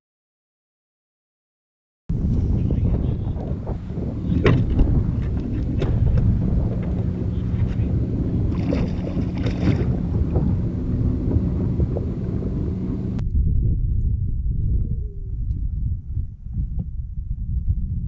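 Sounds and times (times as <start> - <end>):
low steady hum: 2.1 - 18.0
wind buffeting microphone: 2.1 - 18.0
clicks and knocks from boat: 4.3 - 7.9.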